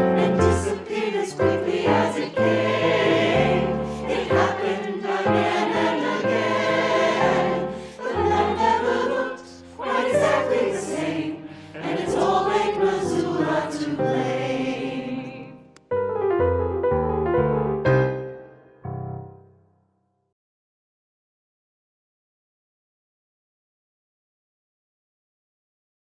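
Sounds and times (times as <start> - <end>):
choir singing: 0.0 - 15.8
instrumental accompaniment: 9.8 - 19.5.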